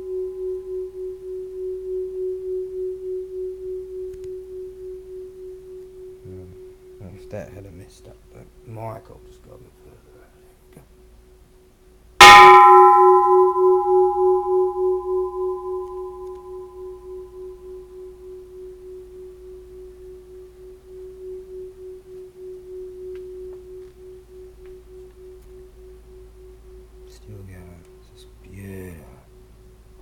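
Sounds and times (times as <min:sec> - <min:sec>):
temple bell clang: 0:12.2 - 0:18.0.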